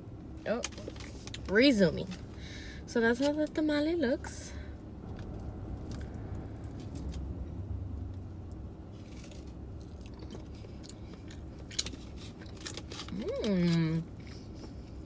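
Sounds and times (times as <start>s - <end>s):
steady low rumble: 0.0s - 13.3s
person chewing: 8.4s - 15.0s.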